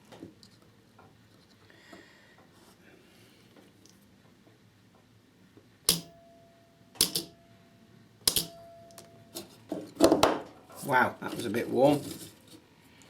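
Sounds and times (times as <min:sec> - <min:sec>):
faint steady whine: 0:05.5 - 0:10.0
spot welder cracks: 0:08.3 - 0:08.6.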